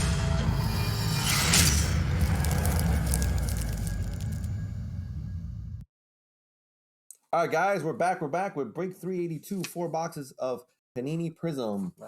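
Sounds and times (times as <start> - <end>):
low rumble with crackling: 1.9 - 5.8.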